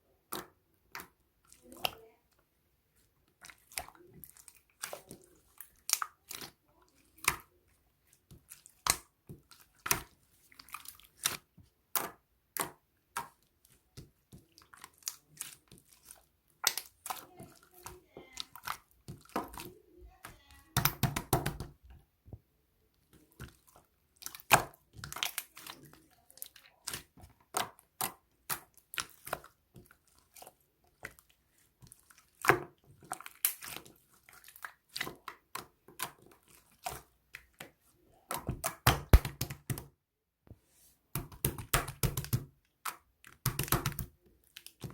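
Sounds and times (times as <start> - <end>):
slime popping by hand: 38.5 - 39.9.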